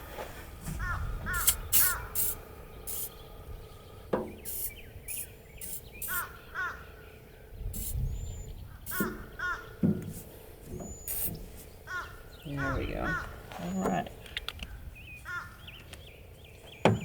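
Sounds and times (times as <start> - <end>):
crow cawing: 0.8 - 2.1, 6.1 - 6.9, 9.4 - 9.7, 11.9 - 13.4, 15.2 - 15.6
aerosol spray hissing: 1.4 - 3.2, 4.3 - 6.3, 7.8 - 8.0, 8.9 - 9.2, 11.1 - 11.4.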